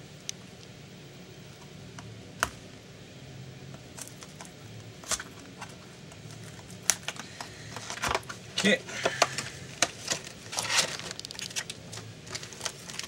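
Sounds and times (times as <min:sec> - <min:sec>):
card packs rustling: 0:03.8 - 0:13.0.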